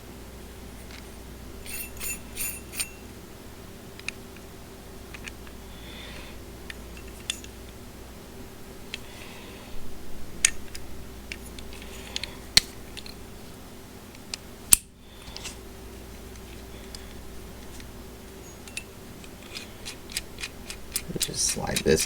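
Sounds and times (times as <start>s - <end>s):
low steady hum: 0.0s - 22.0s
metal tool parts clicking: 1.6s - 3.0s, 18.6s - 22.0s.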